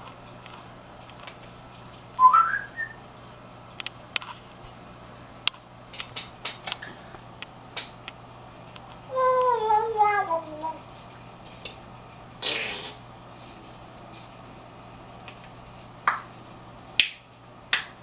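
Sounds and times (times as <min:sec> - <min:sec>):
parrot whistling: 0:02.2 - 0:03.0.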